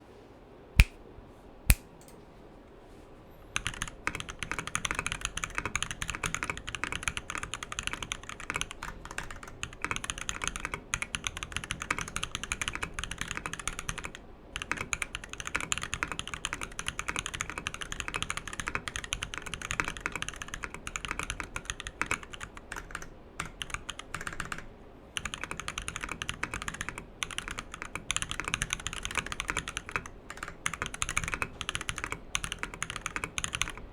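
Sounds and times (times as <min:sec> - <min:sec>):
sharp click: 0:00.8 - 0:01.0, 0:01.7 - 0:02.2
mechanical keyboard typing: 0:03.6 - 0:33.9.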